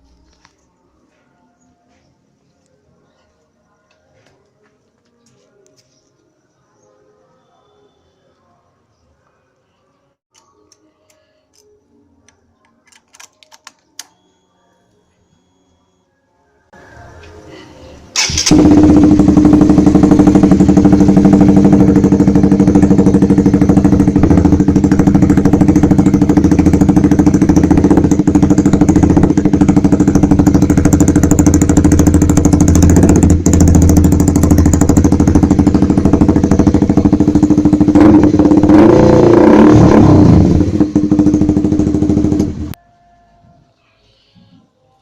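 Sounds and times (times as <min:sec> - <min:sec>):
motorcycle engine idling: 0:18.2 - 0:42.8
motorcycle engine revving: 0:18.2 - 0:42.8.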